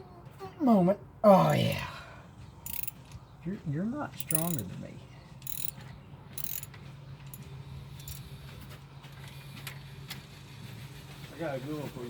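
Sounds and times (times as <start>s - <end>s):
metal clicks: 2.7s - 3.0s, 4.2s - 4.6s, 5.4s - 5.7s, 6.4s - 6.7s, 8.0s - 8.2s
ratchet wrench clicking: 2.7s - 3.0s, 4.2s - 4.6s, 5.4s - 5.8s, 6.4s - 6.7s, 8.0s - 8.2s.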